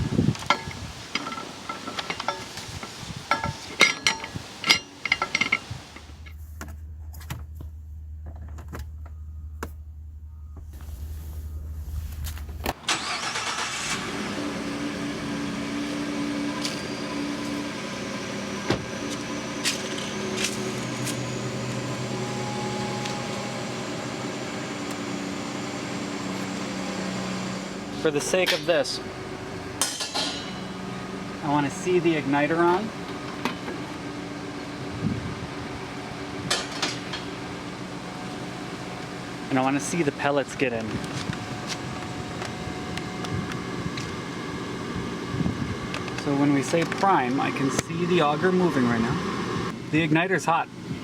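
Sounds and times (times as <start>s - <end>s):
low steady hum: 0.0s - 12.7s
handling clicks and knocks: 0.4s - 7.6s
truck engine idling: 8.9s - 49.9s.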